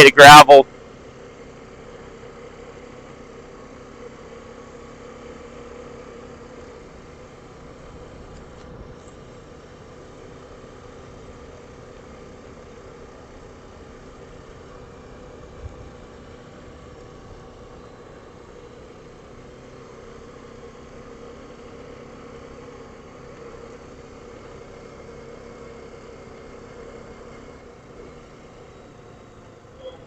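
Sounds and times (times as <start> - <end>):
atv engine running: 0.0 - 30.0.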